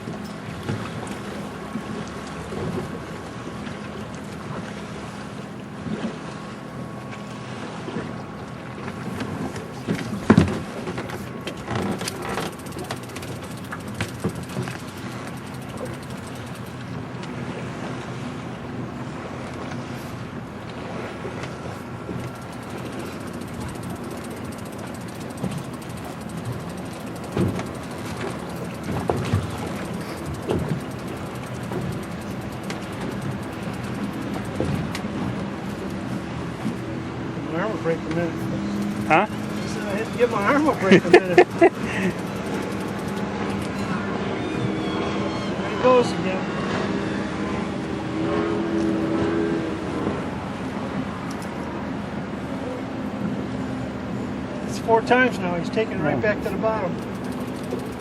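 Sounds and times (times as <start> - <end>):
steady low hum: 0.0 - 44.5, 47.6 - 58.0
boat engine rumble: 0.0 - 58.0
water lapping: 0.0 - 58.0
small clicks: 9.6 - 17.4, 22.1 - 36.0, 38.6 - 43.9, 56.4 - 58.0.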